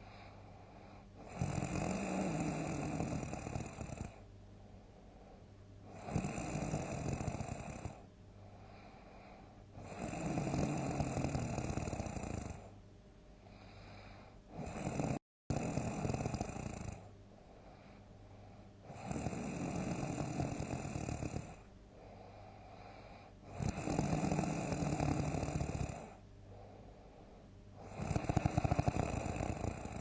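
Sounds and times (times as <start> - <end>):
quiet breathing: 0.0 - 30.0
person snoring loudly: 1.2 - 4.2, 5.9 - 8.0, 9.8 - 12.7, 14.5 - 17.1, 18.9 - 21.7, 23.5 - 26.2, 27.8 - 30.0.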